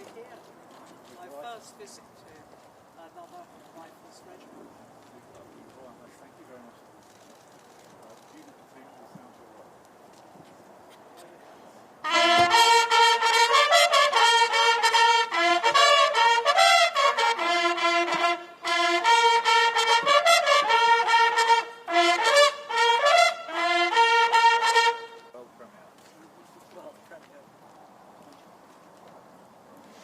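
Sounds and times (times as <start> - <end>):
brass band playing: 12.0 - 25.4.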